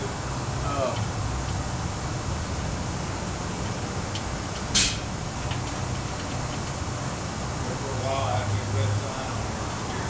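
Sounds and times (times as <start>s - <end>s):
short sharp hiss: 4.7s - 5.1s.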